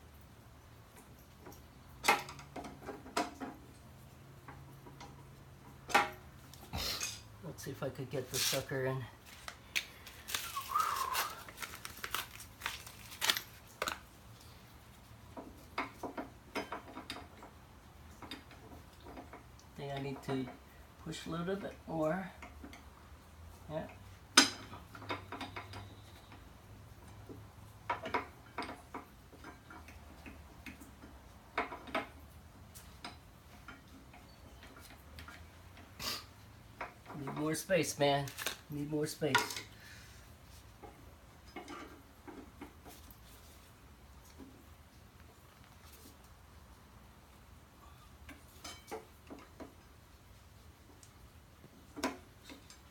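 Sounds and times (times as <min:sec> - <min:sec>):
metallic clicks and scrapes: 0:08.2 - 0:14.5.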